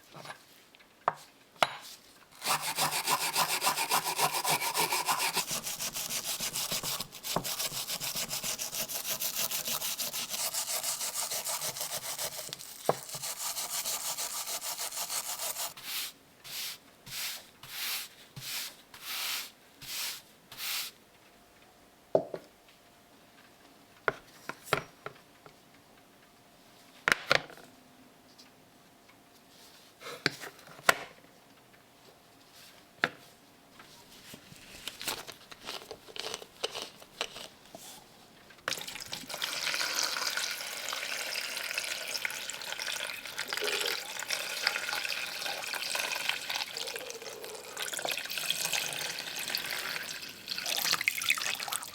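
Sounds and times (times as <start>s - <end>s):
hand tool rasping on workpiece: 2.4s - 15.8s.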